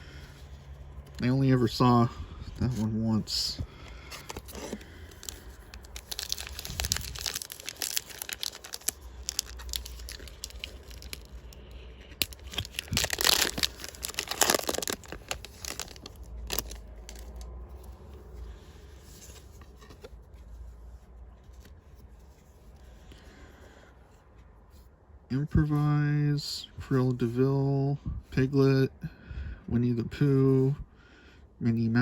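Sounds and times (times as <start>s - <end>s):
wrapper tearing and crinkling: 4.1s - 17.5s.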